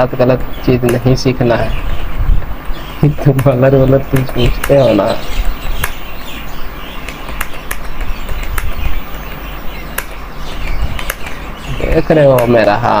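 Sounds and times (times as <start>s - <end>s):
birds chirping: 0.0s - 13.0s
keyboard keys clicking: 3.2s - 5.1s, 5.7s - 6.1s, 7.0s - 10.2s, 10.9s - 11.4s.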